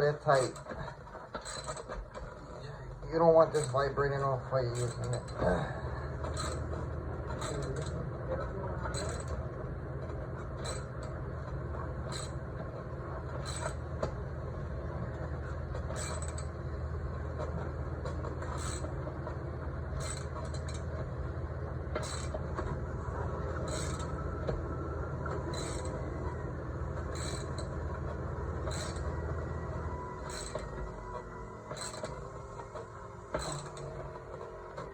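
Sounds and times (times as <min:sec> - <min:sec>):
steady low hum: 0:00.0 - 0:34.9
wrench clicking and creaking: 0:00.3 - 0:02.3, 0:03.5 - 0:05.5, 0:06.2 - 0:06.7, 0:08.9 - 0:09.4, 0:15.9 - 0:16.5, 0:23.7 - 0:24.2, 0:25.5 - 0:26.0, 0:27.1 - 0:27.7, 0:28.6 - 0:29.1, 0:30.2 - 0:34.0.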